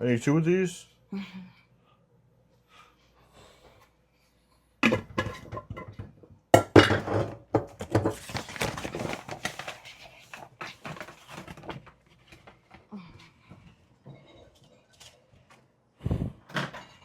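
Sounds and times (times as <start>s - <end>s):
dishes and utensils clattering: 4.8s - 9.2s.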